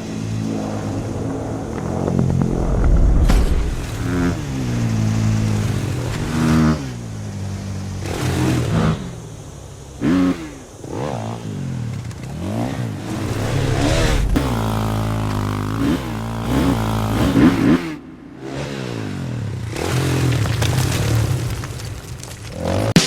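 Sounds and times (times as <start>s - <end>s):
motocross bike engine revving: 0.0s - 21.6s, 22.5s - 23.0s.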